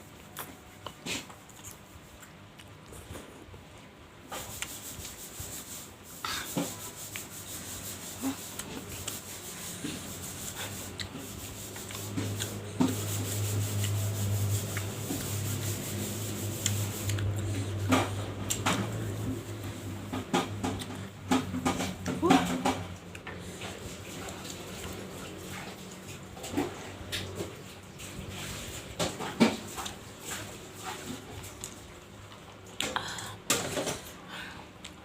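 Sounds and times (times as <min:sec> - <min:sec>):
steady low hum: 0:00.0 - 0:35.0
chewing with wet clicks: 0:00.2 - 0:03.0, 0:16.6 - 0:17.7.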